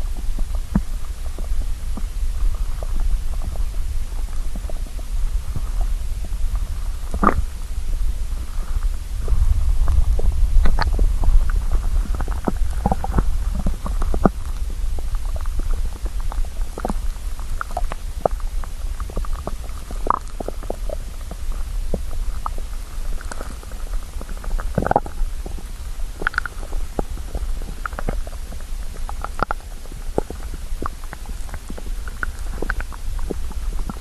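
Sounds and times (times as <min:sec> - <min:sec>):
stomach rumbling: 0:00.0 - 0:34.0
stomach pops and squeaks: 0:07.0 - 0:07.6, 0:09.3 - 0:25.6, 0:26.2 - 0:34.0.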